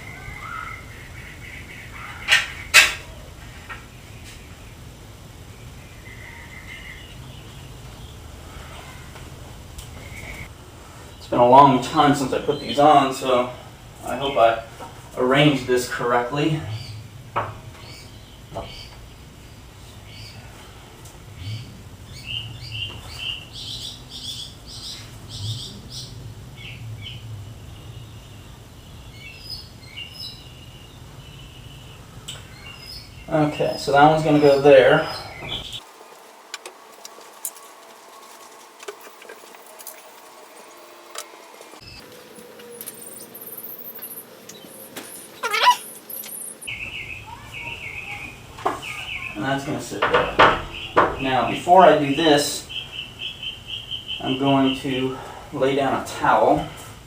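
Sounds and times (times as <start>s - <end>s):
faint high bird chirps: 0.0s - 2.8s, 41.8s - 49.4s
bird warbling song: 0.0s - 4.8s, 39.0s - 49.4s
birds chirping and singing: 0.0s - 4.9s, 5.5s - 9.2s, 21.3s - 36.3s, 37.2s - 49.7s, 50.3s - 55.0s
bird call sweeping down: 43.0s - 46.7s.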